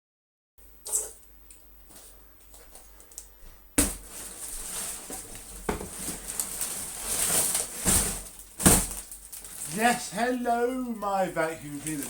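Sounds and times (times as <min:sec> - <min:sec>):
cardboard ripping: 0:03.8 - 0:10.0
cardboard packaging rustling: 0:03.8 - 0:12.0.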